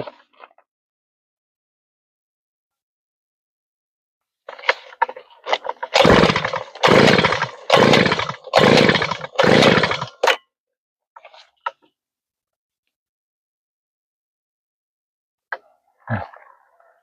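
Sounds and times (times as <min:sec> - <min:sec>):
small engine pull-start cranking: 0:04.5 - 0:10.4.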